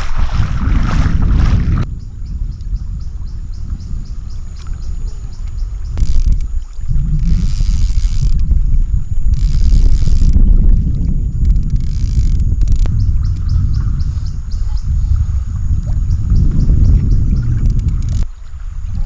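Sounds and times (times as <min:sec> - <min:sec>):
wind rumbling on microphone: 0:00.0 - 0:19.0
high pulsing chirping: 0:04.0 - 0:10.5, 0:11.2 - 0:14.7, 0:16.3 - 0:18.2.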